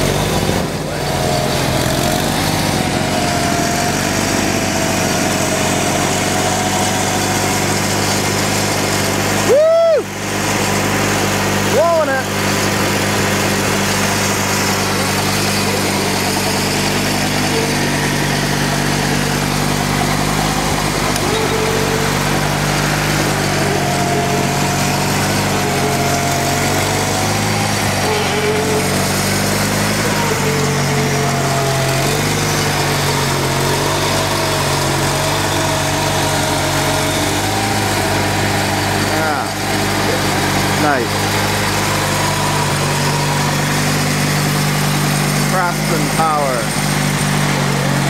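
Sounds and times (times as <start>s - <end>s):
snowblower engine running: 0.0s - 48.0s
wavering high whine: 12.9s - 33.8s.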